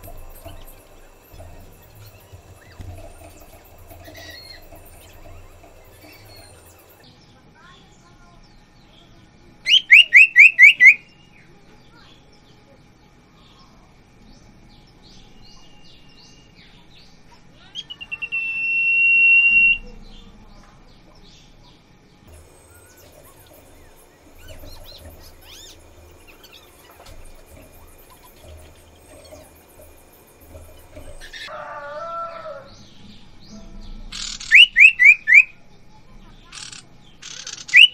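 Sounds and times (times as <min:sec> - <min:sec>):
bird whistling calls: 0:00.0 - 0:07.0, 0:09.7 - 0:11.1, 0:17.7 - 0:19.9, 0:22.3 - 0:31.5, 0:34.2 - 0:35.6, 0:36.6 - 0:37.9
faint bird chirps: 0:00.0 - 0:31.6, 0:32.6 - 0:37.9.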